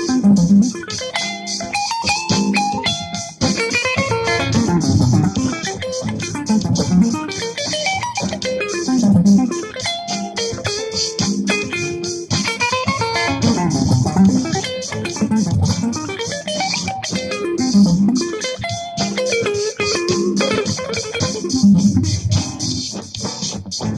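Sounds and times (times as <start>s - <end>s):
electric guitar jam: 0.0s - 23.9s
bass line: 4.0s - 5.6s, 12.9s - 16.2s, 21.5s - 22.8s.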